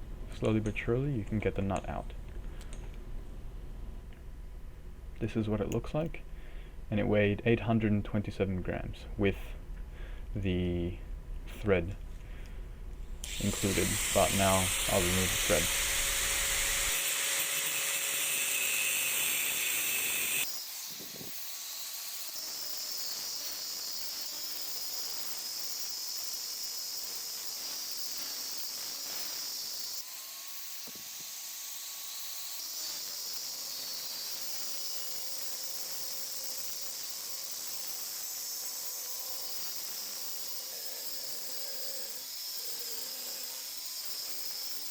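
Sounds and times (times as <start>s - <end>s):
high-pitched hiss: 13.2s - 16.8s, 19.9s - 44.9s.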